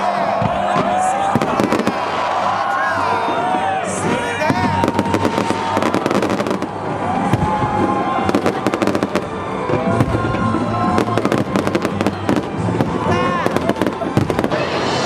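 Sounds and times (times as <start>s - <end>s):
fireworks crackling bangs: 0.0s - 15.0s
music playing: 0.0s - 15.0s.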